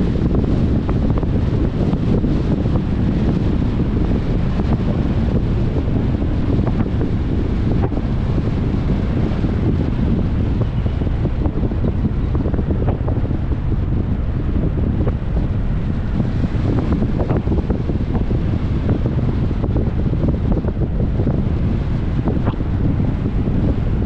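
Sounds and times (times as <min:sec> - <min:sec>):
car road rumble at speed: 0:00.0 - 0:24.0
wind buffeting microphone: 0:00.0 - 0:24.0.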